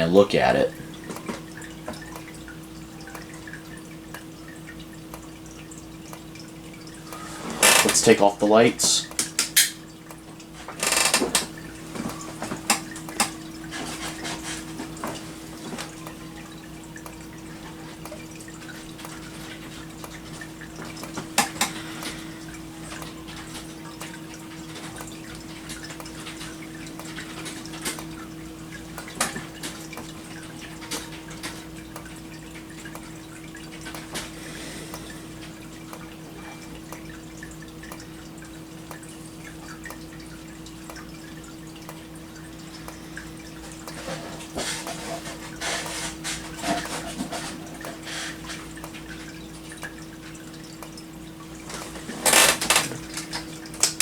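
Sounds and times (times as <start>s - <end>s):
low electrical hum: 0.0s - 54.0s.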